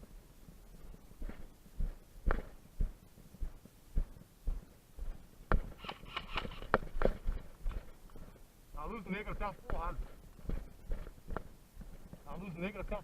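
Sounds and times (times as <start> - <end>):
footsteps: 0.0 - 13.0
rustling of gear or brush: 5.7 - 8.3.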